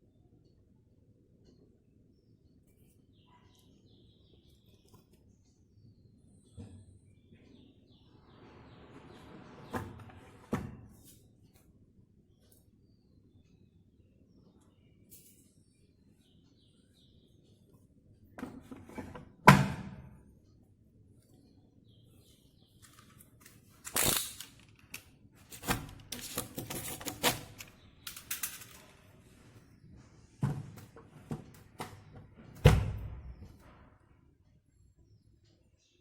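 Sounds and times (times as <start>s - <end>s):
rustling and scraping: 25.4s - 32.6s.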